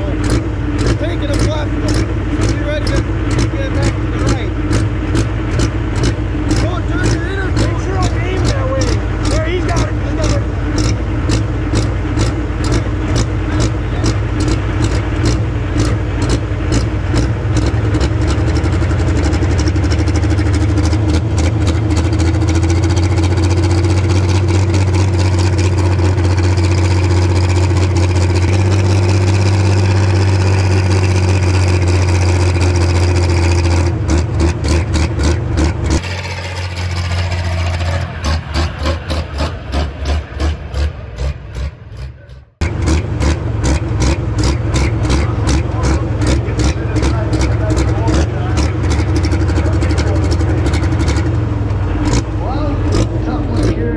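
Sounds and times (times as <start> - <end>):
tractor diesel engine running: 0.0 - 53.9.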